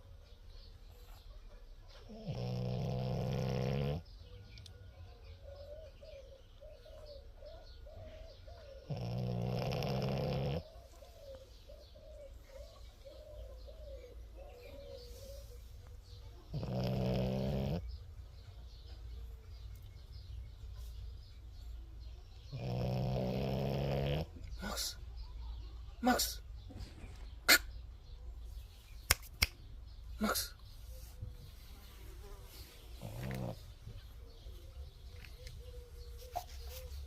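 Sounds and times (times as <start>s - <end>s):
dog snoring: 2.1s - 4.1s, 8.8s - 10.7s, 16.5s - 17.9s, 22.5s - 24.4s, 33.0s - 33.7s.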